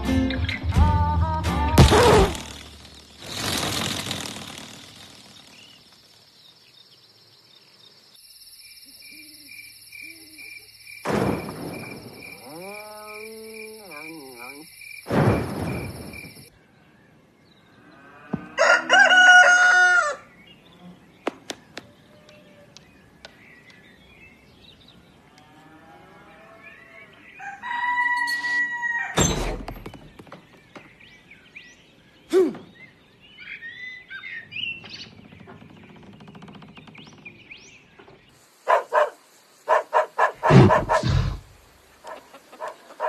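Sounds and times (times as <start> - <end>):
faint chirps: 4.8 - 16.6
rooster crowing: 18.3 - 20.3, 27.3 - 29.2.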